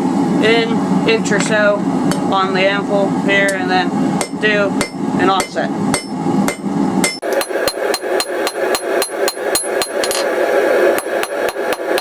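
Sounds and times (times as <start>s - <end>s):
hammer striking steel on anvil: 4.2s - 10.3s.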